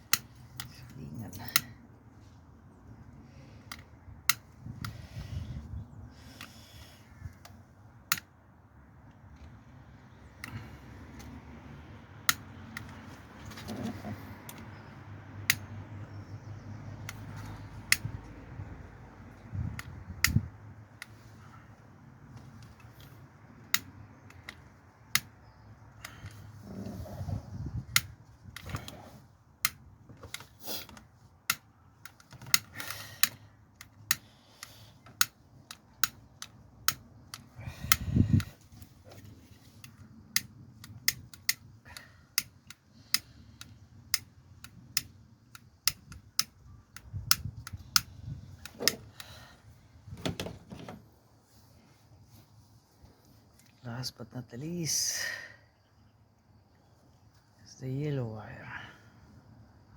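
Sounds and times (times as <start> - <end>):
hand tools clicking and tapping: 0.0 - 1.8, 22.3 - 26.6, 27.9 - 49.5.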